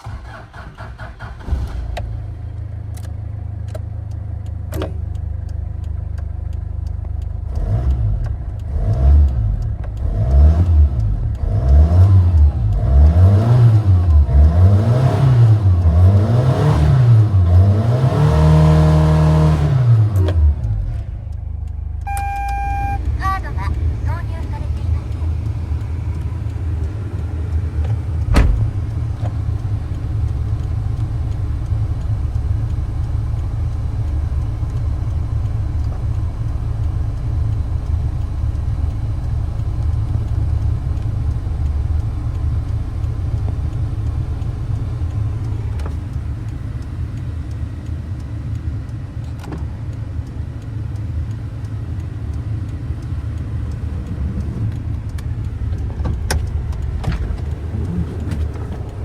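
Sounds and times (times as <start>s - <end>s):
diesel engine idling: 0.0s - 8.7s, 20.4s - 59.0s
sharp knock: 28.3s - 28.8s.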